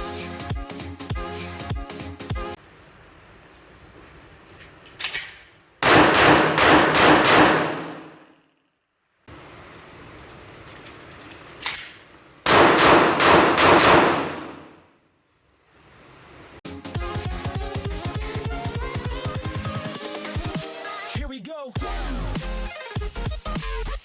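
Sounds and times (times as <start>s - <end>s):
pistol shots: 5.1s - 8.3s, 12.5s - 14.8s.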